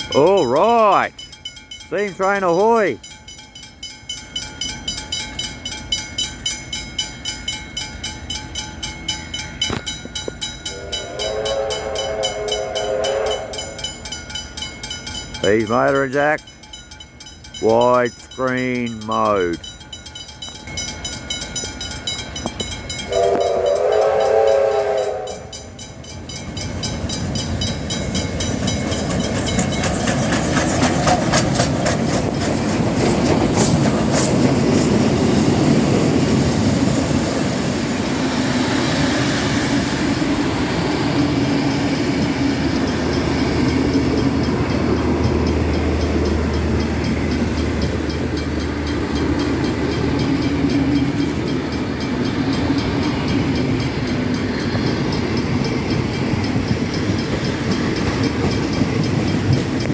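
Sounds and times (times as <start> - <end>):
steam train rumbling past: 0.0 - 59.9
steam whistle chord: 10.6 - 14.1, 23.1 - 25.7
wheels clicking over rails: 26.1 - 38.1.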